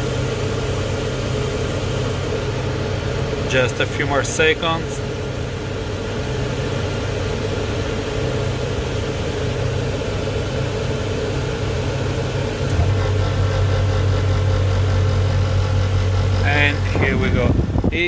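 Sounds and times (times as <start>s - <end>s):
air conditioner hum: 0.0s - 14.9s, 16.4s - 18.0s
compressor low hum: 0.0s - 18.0s
compressor click: 12.6s - 13.5s.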